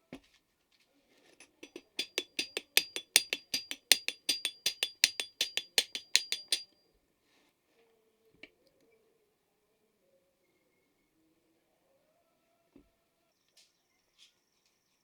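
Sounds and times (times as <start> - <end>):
hammer tapping on metal: 1.4 - 6.8.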